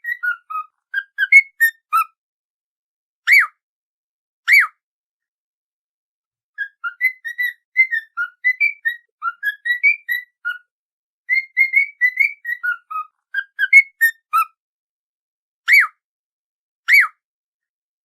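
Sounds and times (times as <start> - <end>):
whistled tune: 0.0 - 2.2, 3.3 - 3.6, 4.5 - 4.8, 6.6 - 10.7, 11.3 - 14.6, 15.7 - 16.0, 16.9 - 17.2.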